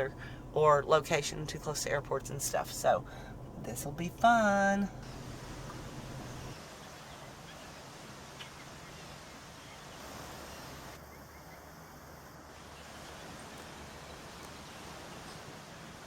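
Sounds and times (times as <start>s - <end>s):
low hum: 0.0s - 6.6s.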